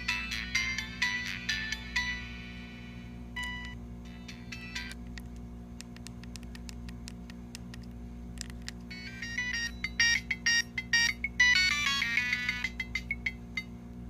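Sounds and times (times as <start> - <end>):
electronic phone ringtone: 0.0 - 2.6, 3.4 - 5.0, 8.9 - 13.7
steady low hum: 0.0 - 14.0.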